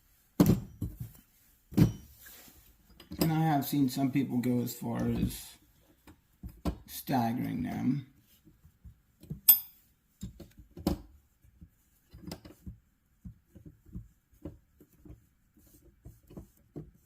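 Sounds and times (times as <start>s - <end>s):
metallic clink: 9.5s - 9.8s.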